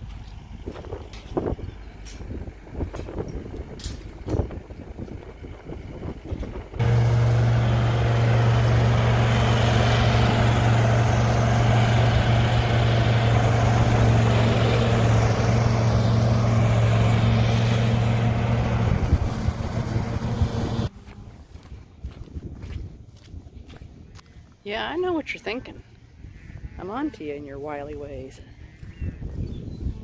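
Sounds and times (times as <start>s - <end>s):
diesel engine running: 0.0s - 21.2s.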